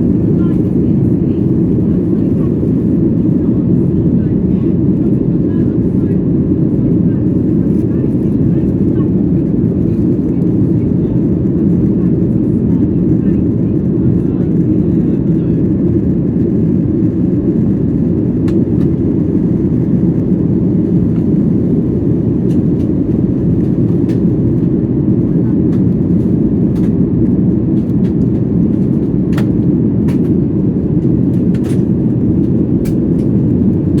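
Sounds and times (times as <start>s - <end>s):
jet engines in cabin: 0.0s - 34.0s.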